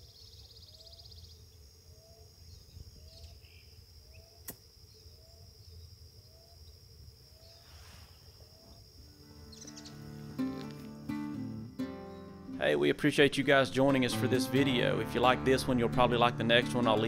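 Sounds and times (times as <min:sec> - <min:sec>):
high-pitched insect chorus: 0:00.0 - 0:15.0
sharp click: 0:04.4 - 0:04.6.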